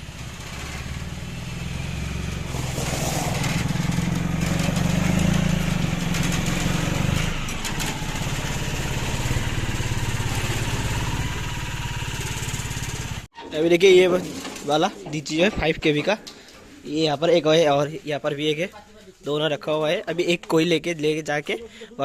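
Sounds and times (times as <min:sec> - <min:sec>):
vehicle engine running: 0:00.0 - 0:13.3.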